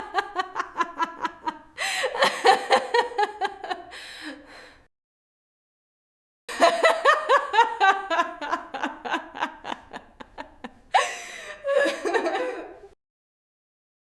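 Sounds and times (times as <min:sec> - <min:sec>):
woman laughing: 0:00.0 - 0:03.9, 0:06.5 - 0:13.0.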